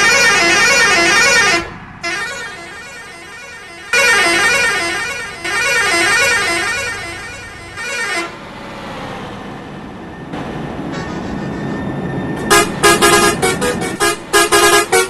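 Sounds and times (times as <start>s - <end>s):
bus musical horn melody: 0.0s - 8.5s, 12.4s - 15.0s
road noise: 0.0s - 15.0s.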